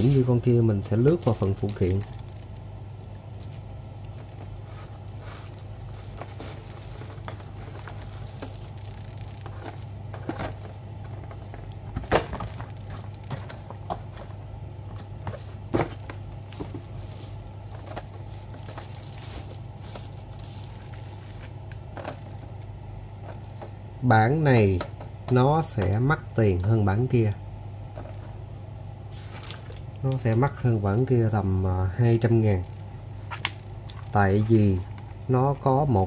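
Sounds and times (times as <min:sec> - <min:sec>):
packaging crinkling and rustling: 0:00.0 - 0:23.6, 0:29.1 - 0:30.6
steady low hum: 0:00.0 - 0:36.0.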